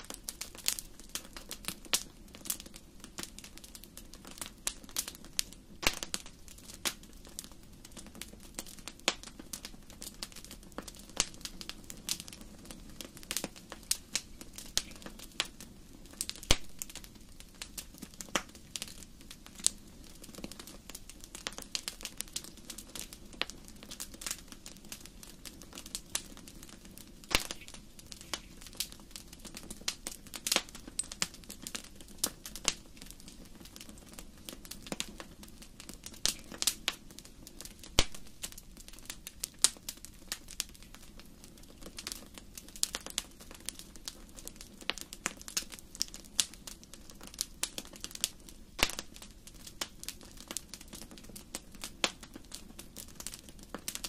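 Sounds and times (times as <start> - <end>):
wood fire crackling: 0.0 - 54.0.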